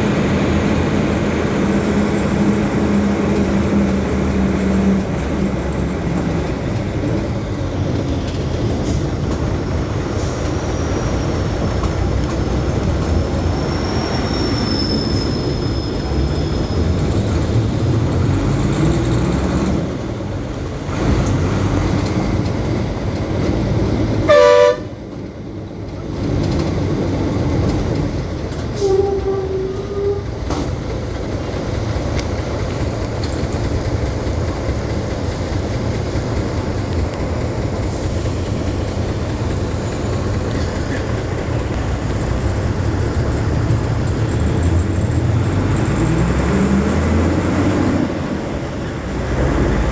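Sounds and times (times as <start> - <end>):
road traffic rumble: 0.0 - 49.9
vehicle horn blast: 24.2 - 25.0.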